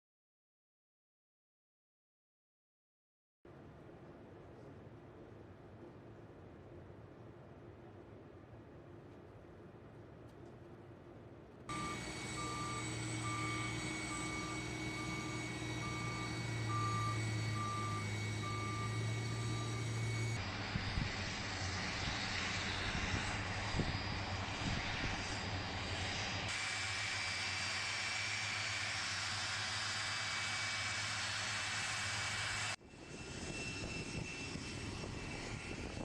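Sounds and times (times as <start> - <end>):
jet engines with high whine: 11.5 - 36.0
beeping: 11.7 - 20.4.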